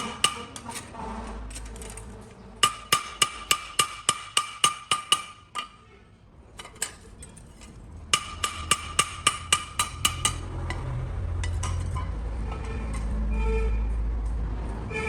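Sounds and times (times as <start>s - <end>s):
hammer striking steel on anvil: 0.0s - 0.6s, 2.6s - 5.8s, 8.1s - 10.8s.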